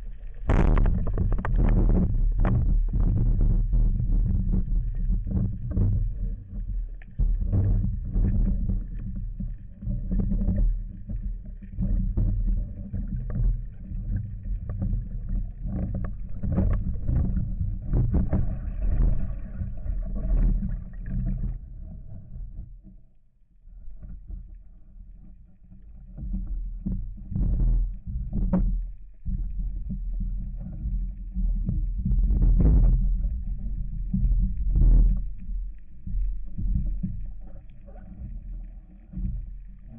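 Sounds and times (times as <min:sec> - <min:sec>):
underwater rumble of water: 0:00.0 - 0:39.9
short underwater knocks: 0:00.4 - 0:06.0, 0:11.8 - 0:22.0.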